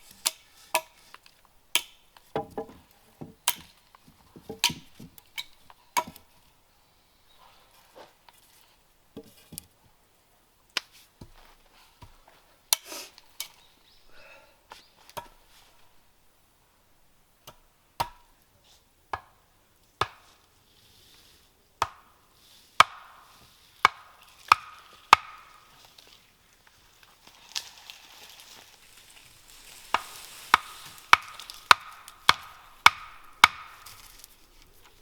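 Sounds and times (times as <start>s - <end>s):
wood being chopped: 1.7s - 6.3s, 17.4s - 18.3s, 19.1s - 19.4s, 20.0s - 20.4s, 21.8s - 22.2s, 22.8s - 25.8s, 29.8s - 35.0s.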